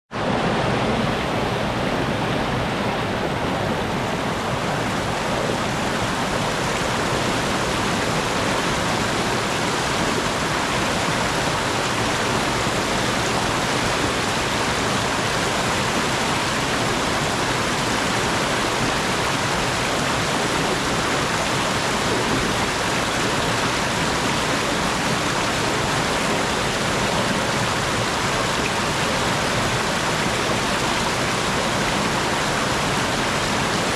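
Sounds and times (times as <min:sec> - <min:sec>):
stream rushing over small falls: 0:00.1 - 0:33.9.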